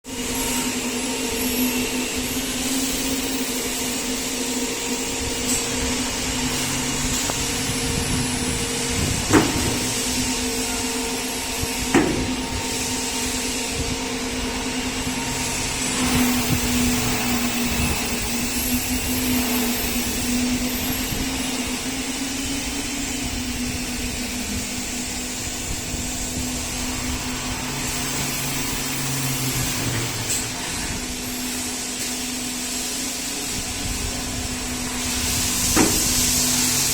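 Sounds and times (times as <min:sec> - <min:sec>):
milling machine motor whine: 0:00.1 - 0:36.9
sharp knocks: 0:11.9 - 0:12.4.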